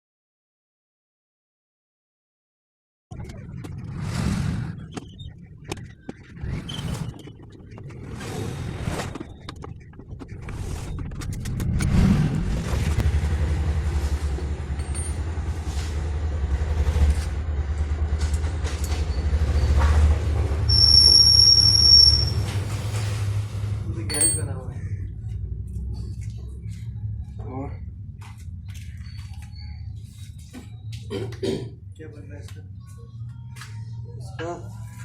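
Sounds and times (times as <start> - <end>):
engine running with low rumble: 3.1 - 35.0
short high beep: 20.7 - 22.5.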